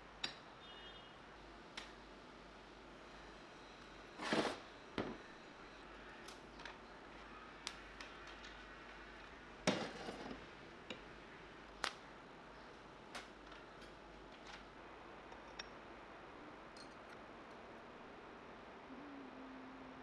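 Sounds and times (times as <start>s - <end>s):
metal tools clicking and knocking: 16.8s - 17.2s.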